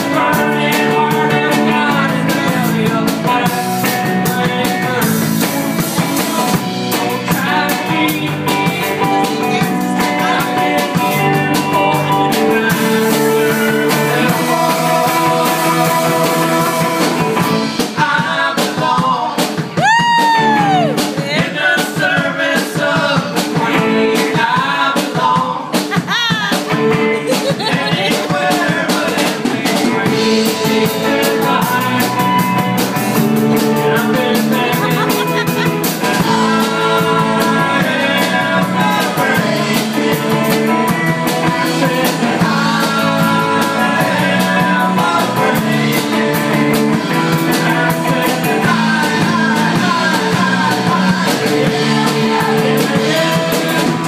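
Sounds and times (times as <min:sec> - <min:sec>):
electric guitar: 0:00.0 - 0:18.0, 0:19.6 - 0:21.7, 0:25.2 - 0:54.0
keyboard: 0:00.0 - 0:19.4, 0:20.0 - 0:54.0
bass guitar: 0:00.0 - 0:54.0
drum kit: 0:00.0 - 0:54.0.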